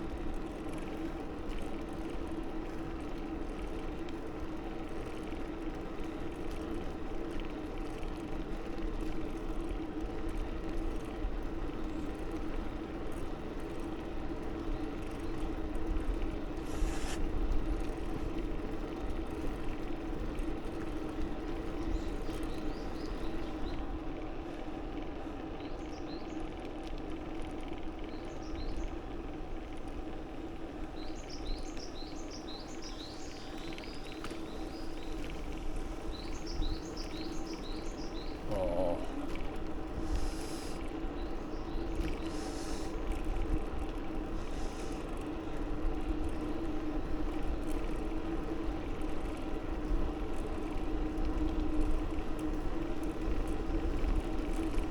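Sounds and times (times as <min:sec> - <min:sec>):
bicycle riding rumble: 0:00.0 - 0:54.9
brief hiss: 0:16.6 - 0:17.2
small birds chirping: 0:16.6 - 0:17.2, 0:21.6 - 0:23.9, 0:30.0 - 0:43.2.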